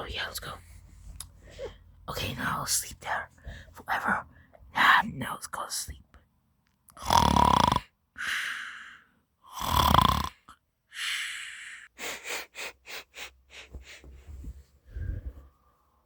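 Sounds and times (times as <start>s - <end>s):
person pretend snoring: 7.0s - 8.3s, 9.5s - 10.5s
breathy out-breath: 8.2s - 9.2s, 10.9s - 12.5s.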